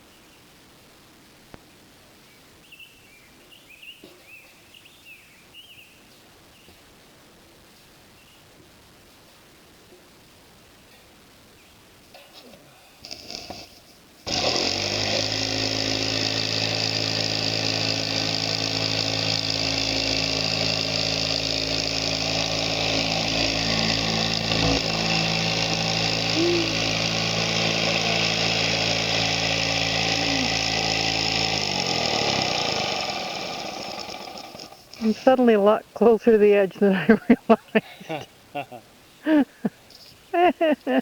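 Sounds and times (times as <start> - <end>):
motor running: 14.3 - 35.4.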